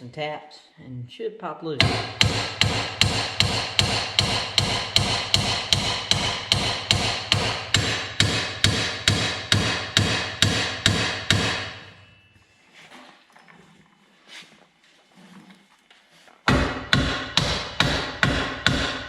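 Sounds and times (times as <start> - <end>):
hammer blows on metal: 1.8 - 12.2, 16.5 - 19.0.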